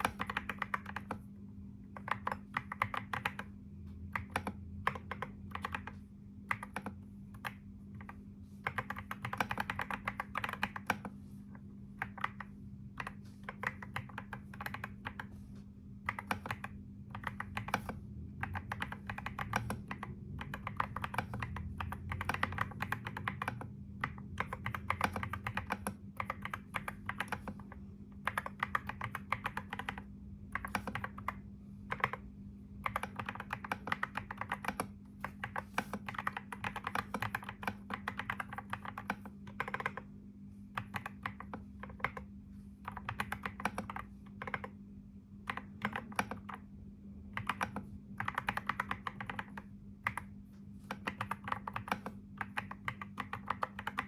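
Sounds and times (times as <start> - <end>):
typing on computer keyboard: 0.0 - 1.3, 1.9 - 11.2, 12.0 - 15.4, 16.0 - 44.8, 45.4 - 46.7, 47.3 - 54.0
steady low hum: 0.0 - 54.0.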